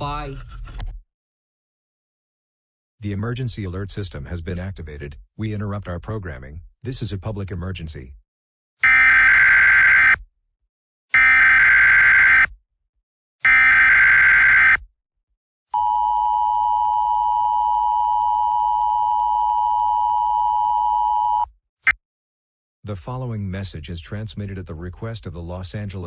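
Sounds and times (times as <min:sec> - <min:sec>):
buzzing digital data bursts: 0:08.8 - 0:10.2, 0:11.2 - 0:12.5, 0:13.5 - 0:14.8.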